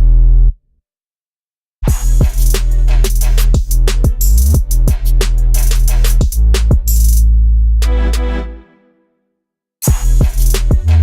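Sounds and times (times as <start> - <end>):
heavy low bass: 0.0 - 0.6, 1.8 - 8.4, 9.8 - 11.0
trap beat drum machine: 1.9 - 8.3, 9.8 - 11.0.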